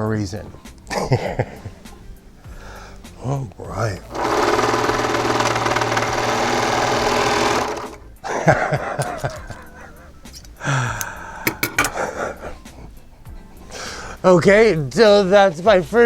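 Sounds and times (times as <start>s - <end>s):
sewing machine humming: 4.0s - 8.2s
clicks: 10.3s - 12.0s.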